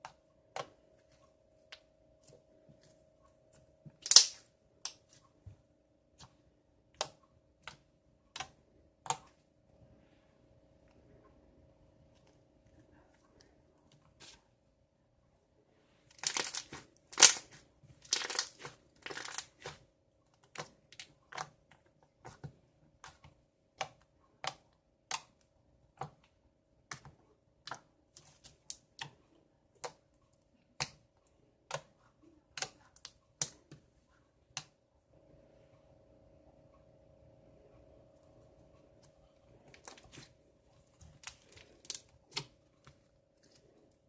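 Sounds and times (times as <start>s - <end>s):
slime squelching: 0.0s - 10.2s, 15.7s - 34.8s, 38.9s - 44.0s
slime clicks and pops: 4.0s - 4.4s.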